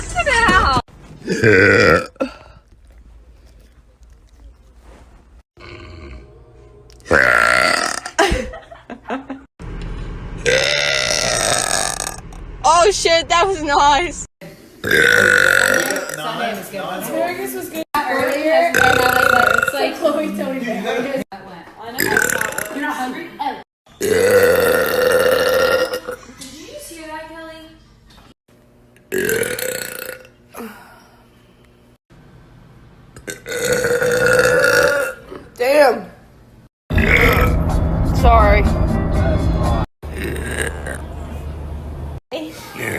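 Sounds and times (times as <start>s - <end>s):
woman burping loudly: 1.2s - 2.6s, 5.6s - 6.3s, 7.0s - 8.3s, 10.5s - 12.2s, 14.8s - 16.3s, 18.2s - 20.0s, 22.0s - 23.1s, 24.0s - 26.3s, 29.1s - 30.8s, 33.2s - 35.6s, 36.9s - 37.6s, 40.0s - 41.0s
woman belching: 1.3s - 2.5s, 5.6s - 6.3s, 7.1s - 8.2s, 10.5s - 12.2s, 14.8s - 16.3s, 18.2s - 20.0s, 22.0s - 23.0s, 24.0s - 26.3s, 29.1s - 30.4s, 33.2s - 35.6s, 36.9s - 37.6s, 40.0s - 41.1s.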